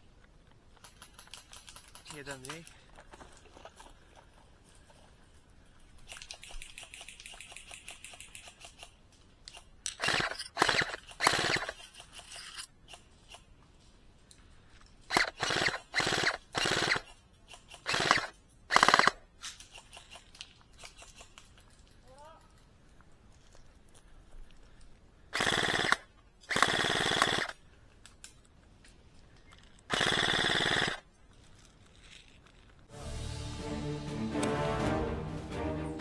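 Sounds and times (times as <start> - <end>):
airsoft gun full-auto bursts: 9.9 - 12.4, 15.1 - 20.2, 25.3 - 27.6, 29.9 - 31.1
faint rapid airsoft fire: 10.0 - 12.2, 15.1 - 19.2, 25.3 - 27.6, 29.9 - 31.0.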